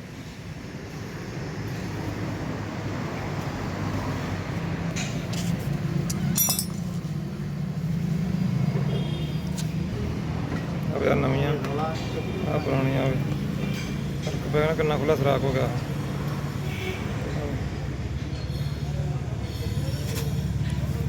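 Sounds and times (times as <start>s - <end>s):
metal tools clinking: 5.0s - 7.1s.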